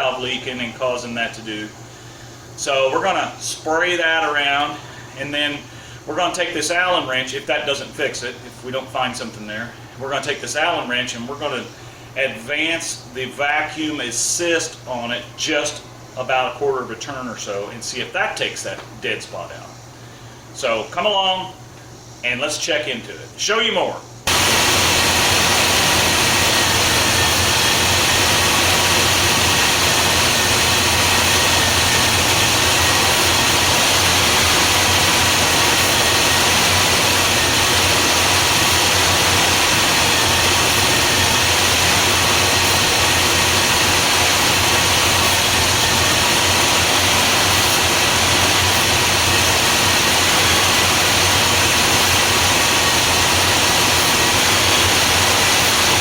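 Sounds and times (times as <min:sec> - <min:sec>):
car engine idling: 0:24.3 - 0:56.0.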